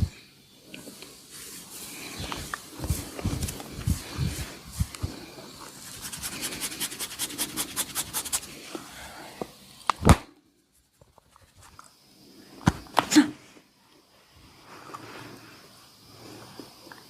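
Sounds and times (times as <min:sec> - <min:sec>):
loud hand smack: 0:09.9 - 0:10.3.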